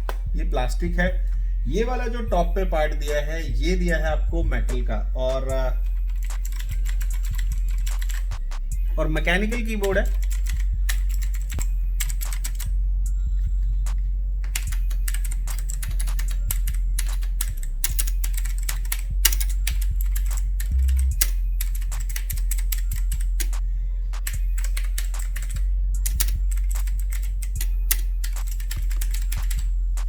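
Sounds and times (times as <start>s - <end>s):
steady low hum: 0.0s - 30.0s
mechanical keyboard key clicks: 24.2s - 27.3s.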